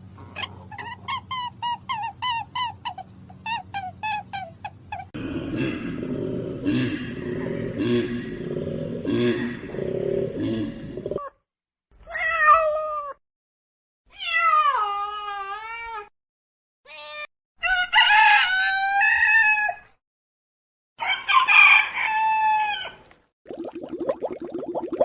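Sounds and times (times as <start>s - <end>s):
rooster crowing: 17.6s - 19.9s, 21.0s - 23.0s.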